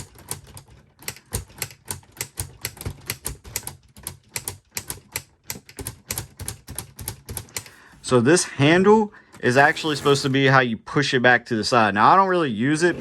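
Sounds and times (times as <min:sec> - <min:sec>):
plastic typewriter mechanism clacking: 0:00.0 - 0:07.8.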